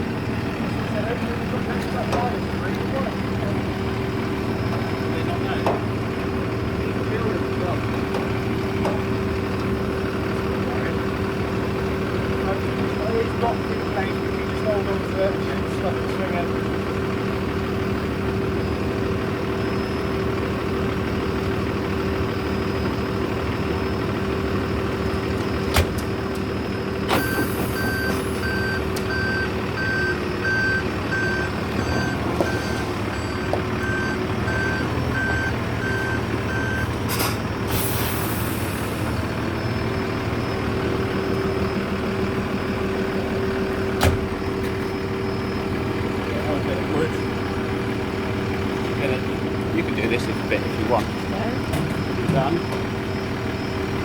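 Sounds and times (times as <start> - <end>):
truck engine running: 0.0 - 54.0
reversing alarm beeping: 0.9 - 48.4, 49.1 - 54.0
air brake hiss: 37.1 - 39.2.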